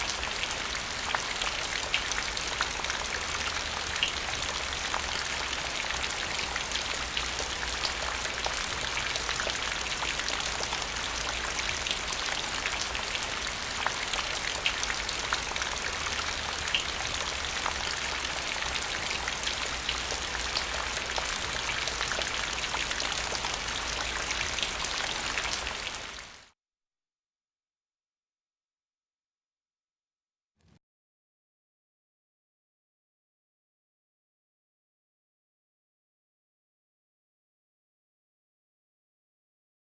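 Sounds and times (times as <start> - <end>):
rain hiss: 0.0 - 26.4.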